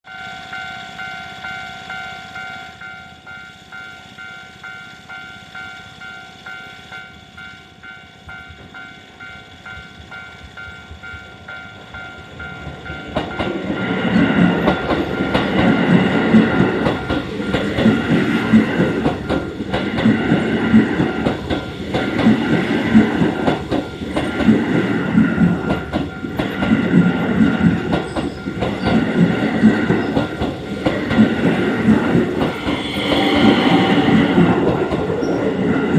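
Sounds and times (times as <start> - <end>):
level crossing alarm ringing: 0.0 - 35.5
train wheels clacking over rail joints: 8.5 - 35.9.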